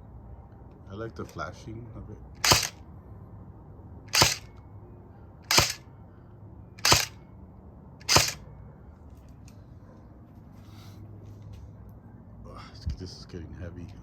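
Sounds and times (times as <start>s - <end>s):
airsoft rifle shots: 2.4s - 2.8s, 4.1s - 4.5s, 5.5s - 5.8s, 6.8s - 7.2s, 8.0s - 8.4s.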